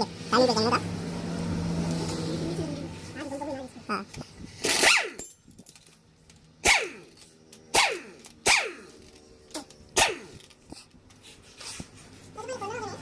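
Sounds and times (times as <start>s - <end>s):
dog barking: 10.0s - 10.3s.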